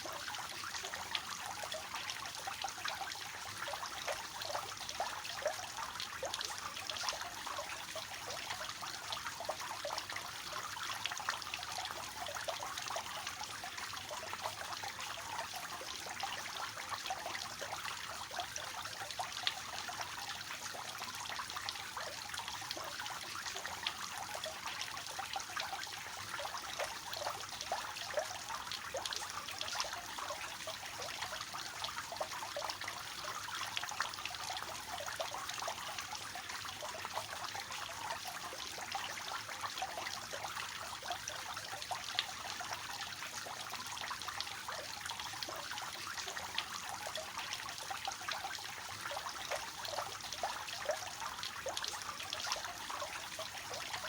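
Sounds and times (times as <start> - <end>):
fountain water splashing: 0.0 - 8.0.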